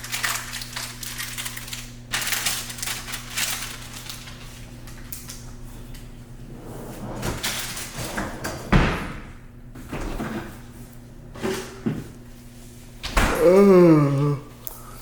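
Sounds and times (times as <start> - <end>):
cupboard door shutting: 8.0 - 10.5.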